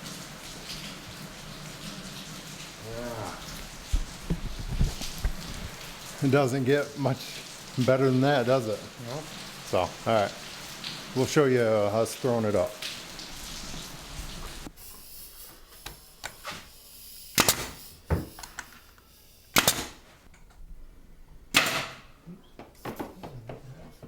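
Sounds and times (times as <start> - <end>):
nail gun firing: 17.3 - 17.8, 19.5 - 20.0, 21.5 - 22.1.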